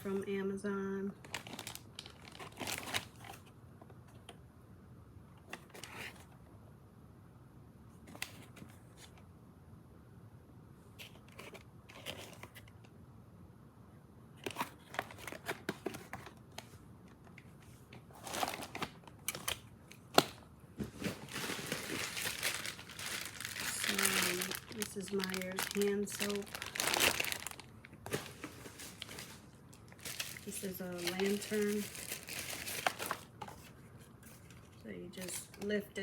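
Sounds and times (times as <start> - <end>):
plastic crinkling and rustling: 1.2 - 3.5, 14.4 - 35.8.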